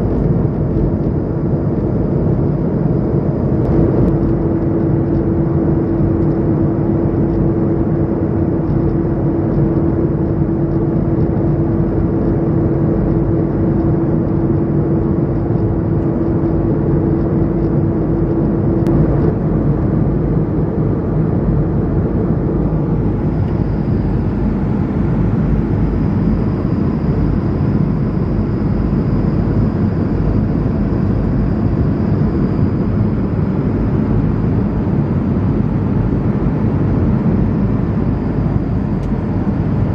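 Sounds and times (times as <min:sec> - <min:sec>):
airplane cabin rush and engine drone: 0:00.0 - 0:39.9
steady hum: 0:00.0 - 0:39.9.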